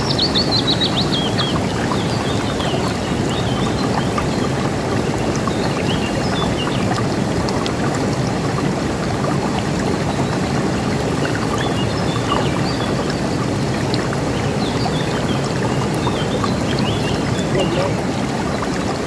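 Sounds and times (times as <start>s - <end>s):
river water rushing: 0.0s - 19.0s
small birds chirping: 11.5s - 18.1s.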